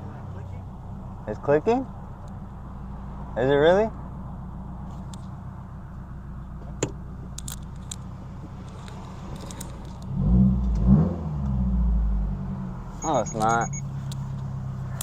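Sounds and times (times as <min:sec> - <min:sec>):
car engine revving: 0:07.5 - 0:15.0.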